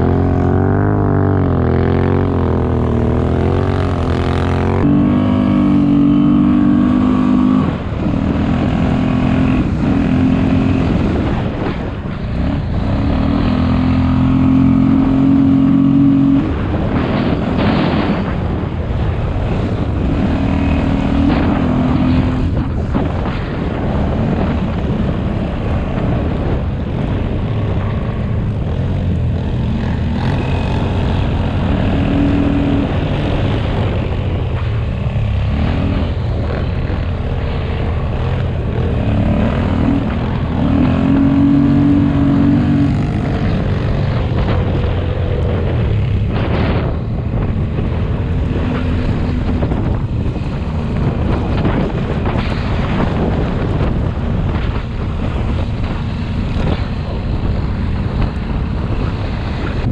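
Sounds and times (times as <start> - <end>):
atv engine revving: 0.0 - 59.9.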